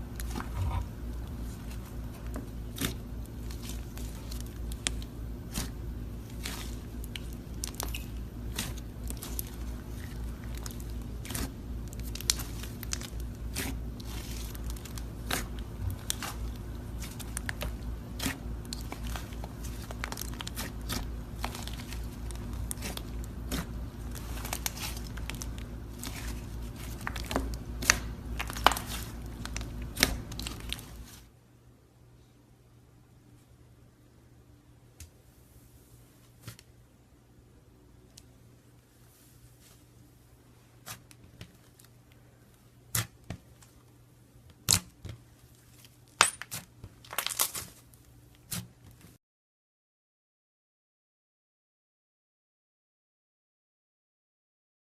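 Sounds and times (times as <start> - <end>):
slime squeezed by hand crackling: 3.5 - 31.2.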